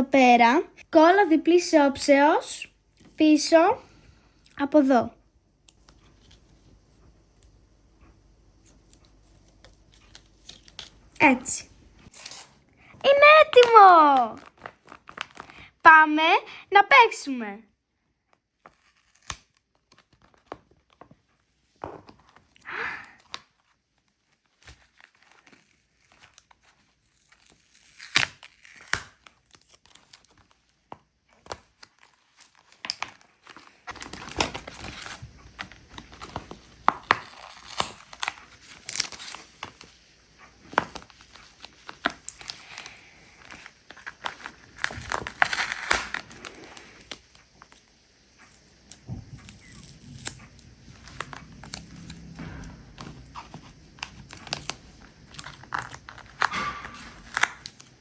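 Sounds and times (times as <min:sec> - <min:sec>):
paper crinkling and rustling: 0:13.1 - 0:15.7, 0:18.4 - 0:22.6, 0:23.3 - 0:58.0
tape ripping: 0:18.6 - 0:20.6, 0:24.6 - 0:30.5, 0:31.4 - 0:39.9, 0:40.7 - 0:47.8, 0:48.4 - 0:58.0.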